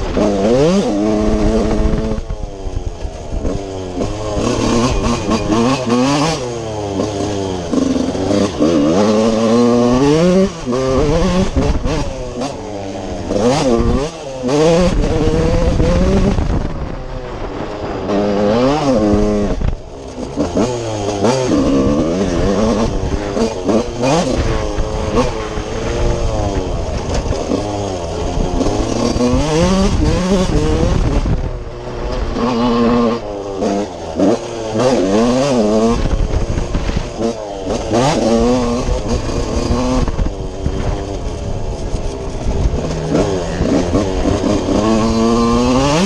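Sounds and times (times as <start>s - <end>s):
motocross engine revving: 0.0s - 46.0s.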